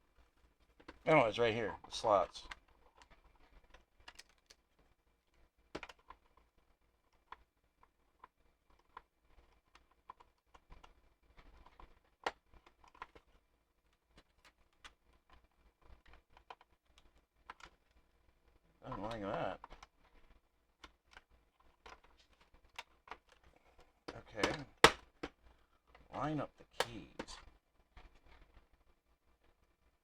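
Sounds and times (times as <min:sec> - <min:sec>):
puzzle pieces clicking and tapping: 0:24.1 - 0:25.4.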